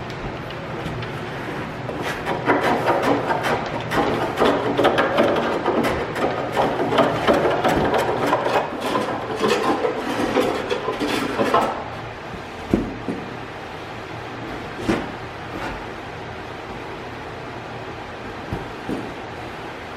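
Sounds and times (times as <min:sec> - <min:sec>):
wooden parts scraping and knocking: 0:00.1 - 0:11.9.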